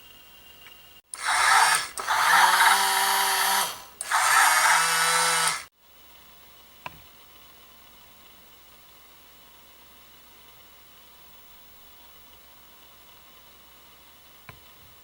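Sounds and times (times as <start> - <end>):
toy electric motor whirring: 1.1 - 5.7.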